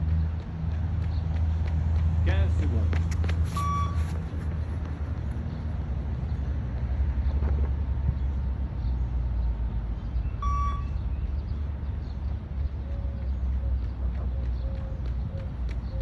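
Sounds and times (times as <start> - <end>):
short electronic beep: 3.6 - 4.0, 10.4 - 11.0.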